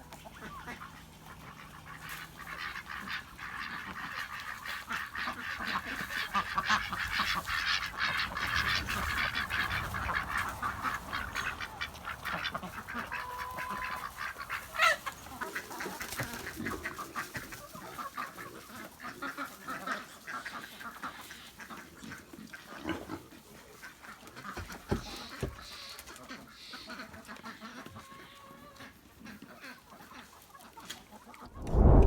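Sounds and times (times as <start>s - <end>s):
ducks quacking: 0.0s - 31.5s
chickens clucking: 0.0s - 31.6s.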